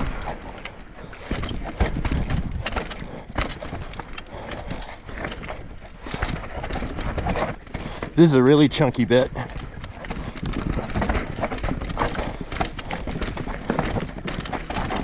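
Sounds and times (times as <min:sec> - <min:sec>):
bike knocks and clatter: 0:00.0 - 0:15.0
tyres rolling over dirt and rocks: 0:00.0 - 0:15.0.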